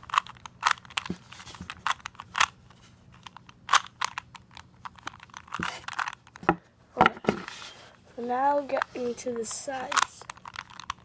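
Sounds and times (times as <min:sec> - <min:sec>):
puzzle cube clicking: 0:00.0 - 0:06.4, 0:09.8 - 0:11.0.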